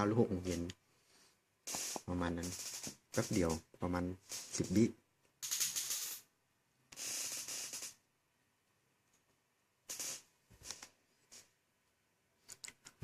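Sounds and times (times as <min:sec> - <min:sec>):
person breathing close to microphone: 0:00.8 - 0:01.5.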